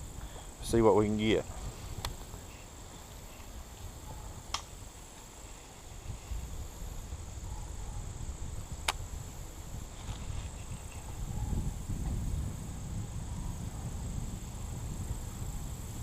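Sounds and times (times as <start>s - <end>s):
wind rumbling on microphone: 0.0s - 16.0s
high-pitched insect drone: 4.8s - 16.0s.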